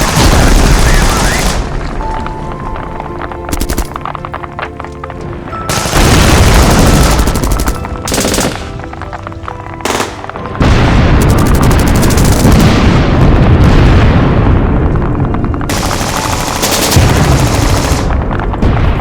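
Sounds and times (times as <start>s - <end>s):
machine-gun bursts: 0.0s - 1.7s, 5.7s - 8.8s, 9.8s - 10.3s, 11.2s - 12.6s, 15.7s - 18.1s
explosion booms: 0.0s - 2.6s, 5.7s - 8.0s, 10.2s - 19.0s
faint background music: 0.0s - 19.0s.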